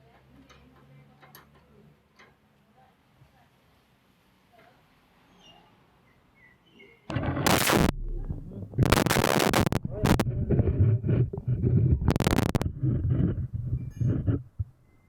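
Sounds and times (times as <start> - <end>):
faint bird chirps: 5.3 - 7.1
low rumble: 7.1 - 14.6.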